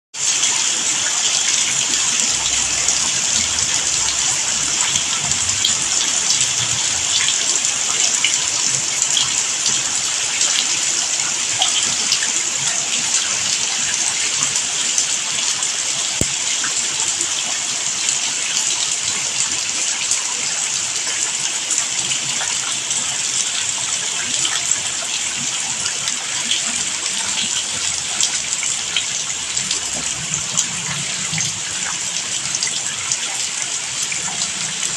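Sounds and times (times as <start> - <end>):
steady rain falling: 0.2 - 34.9.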